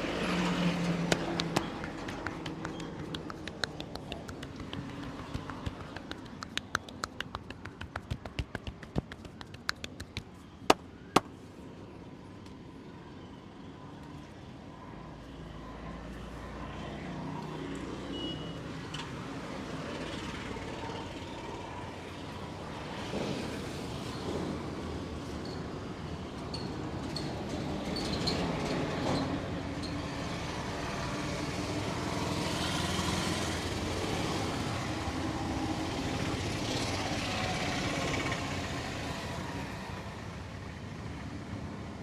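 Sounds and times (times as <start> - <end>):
street traffic noise: 0.0 - 42.0
hands tapping and slapping body: 1.0 - 11.3.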